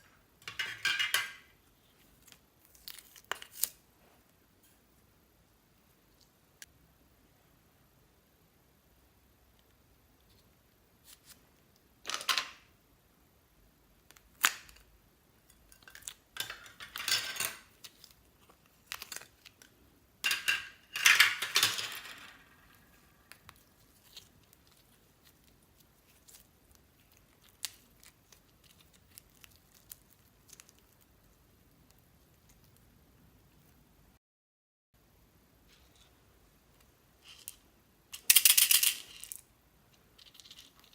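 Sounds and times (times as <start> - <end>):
slime squishing and crackling: 23.5 - 32.8.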